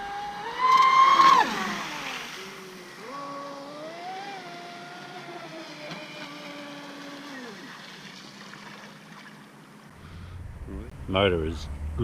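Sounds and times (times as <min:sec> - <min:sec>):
electric boat motor whining: 0:00.0 - 0:09.2.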